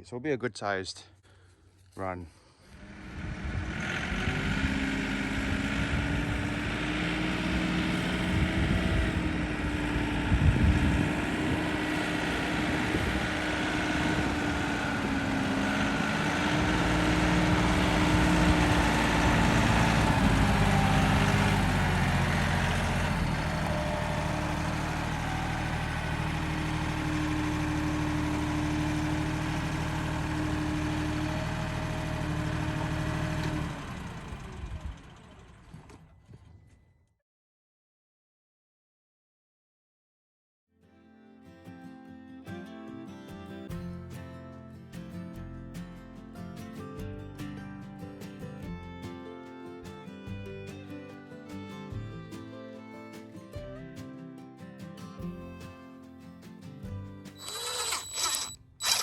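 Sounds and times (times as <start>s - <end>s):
machine engine running: 2.6s - 35.9s, 57.4s - 59.0s.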